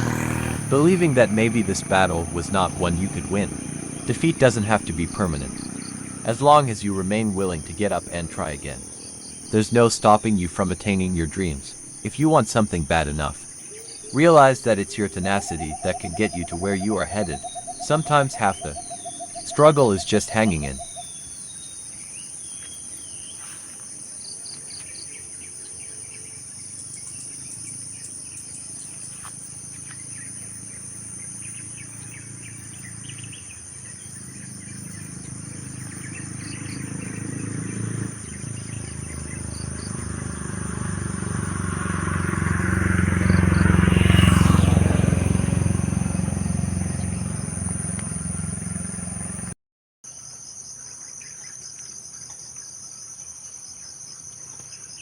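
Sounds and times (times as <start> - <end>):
bird chirps: 0.0 - 40.8.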